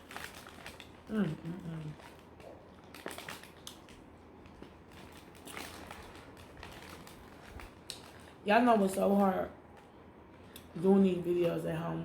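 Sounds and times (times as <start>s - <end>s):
person chewing a cookie: 0.0s - 8.3s
small crackles and clicks: 0.0s - 10.7s.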